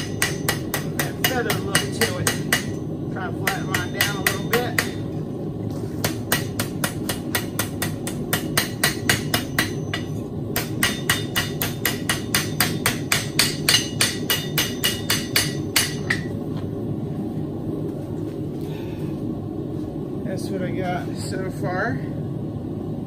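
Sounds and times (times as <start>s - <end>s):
hammer striking steel on anvil: 0.0s - 2.8s, 3.4s - 5.0s, 6.0s - 16.3s
steady low hum: 0.0s - 23.0s.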